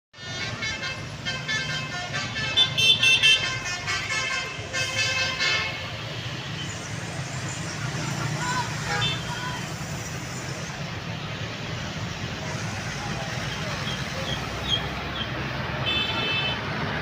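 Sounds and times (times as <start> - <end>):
bus horn playing a tune: 0.2 - 6.0
bus engine running: 6.2 - 17.0.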